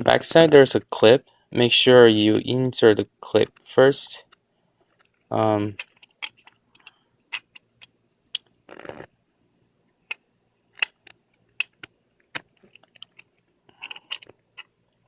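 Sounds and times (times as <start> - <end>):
metal and plastic parts clicking: 4.9 - 8.5, 10.1 - 14.8.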